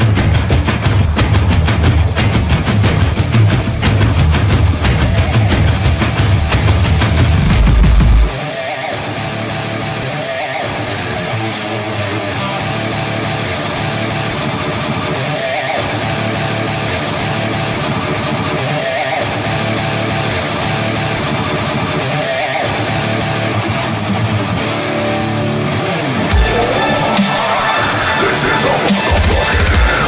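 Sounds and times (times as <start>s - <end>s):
rock music with electric guitar: 0.0s - 30.0s.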